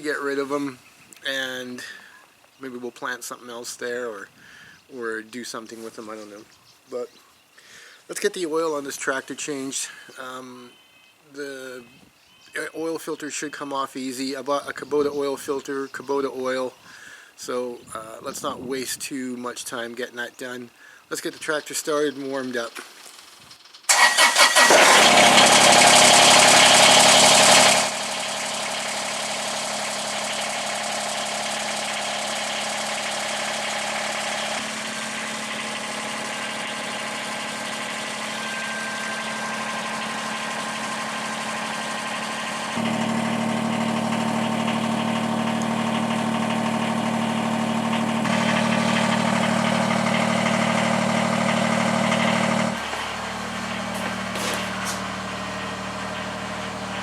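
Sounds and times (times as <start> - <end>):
tractor diesel engine idling: 23.9 - 57.0.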